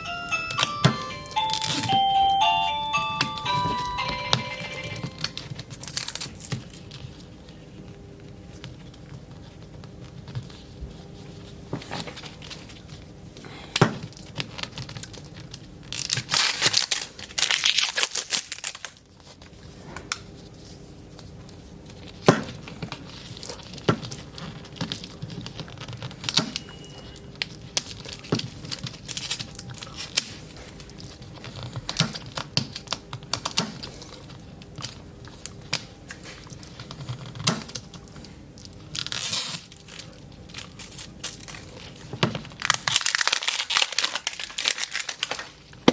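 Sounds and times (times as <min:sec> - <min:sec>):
plastic wrapping tearing and crinkling: 0:05.2 - 0:07.4, 0:14.0 - 0:19.5, 0:22.0 - 0:26.4, 0:27.4 - 0:45.9.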